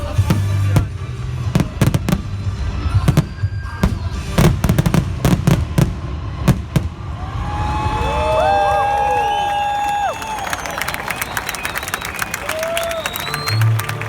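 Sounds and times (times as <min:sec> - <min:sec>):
music playing: 0:00.0 - 0:06.9, 0:12.1 - 0:14.0
fireworks bursting: 0:00.0 - 0:08.1.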